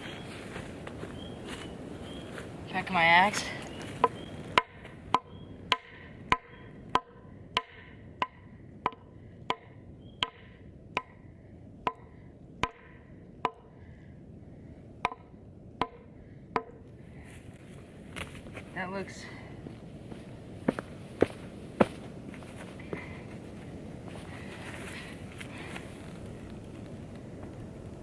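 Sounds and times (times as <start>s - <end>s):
axe pounding wooden pole: 4.0s - 11.2s, 11.9s - 13.6s, 15.0s - 16.8s.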